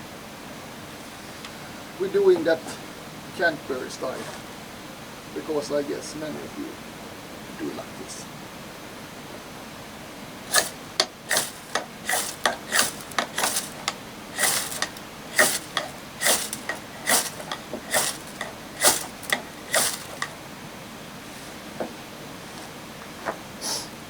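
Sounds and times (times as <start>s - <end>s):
firesteel scrapes: 4.0s - 4.6s, 10.5s - 20.4s.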